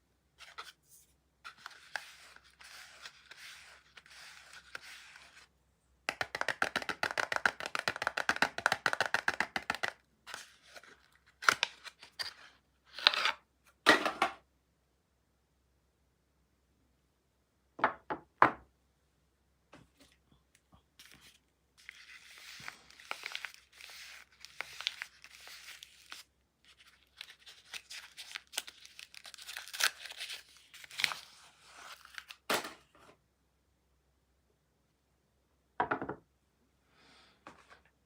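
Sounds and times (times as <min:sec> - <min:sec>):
wrapper tearing and crinkling: 0:21.8 - 0:32.5.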